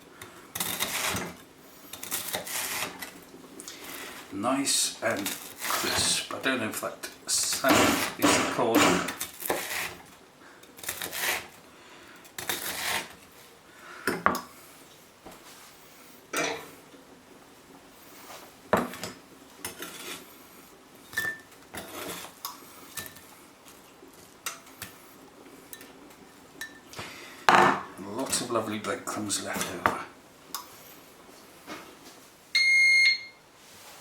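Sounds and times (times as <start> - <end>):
knife cutting crisp bread: 0.6 - 3.1, 9.0 - 10.1, 10.8 - 11.6, 12.4 - 13.2.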